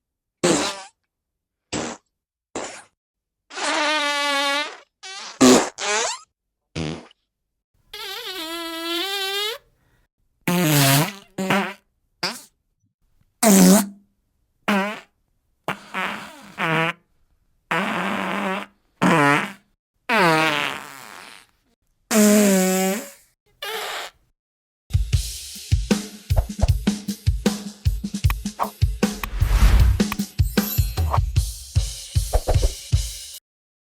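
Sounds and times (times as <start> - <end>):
fart sound effects: 0.4 - 1.0, 1.7 - 2.9, 3.5 - 7.2, 10.5 - 12.5, 13.4 - 13.9, 14.7 - 15.1, 15.7 - 17.0, 17.7 - 21.5, 22.1 - 24.2, 29.1 - 30.2.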